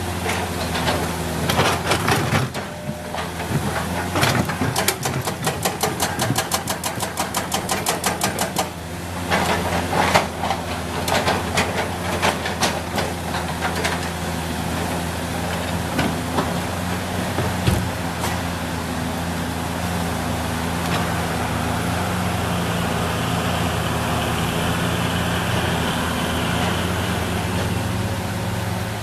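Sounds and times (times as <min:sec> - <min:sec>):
excavator diesel engine running: 0:00.0 - 0:29.0
knocks and clatter: 0:00.2 - 0:14.2, 0:15.5 - 0:18.5.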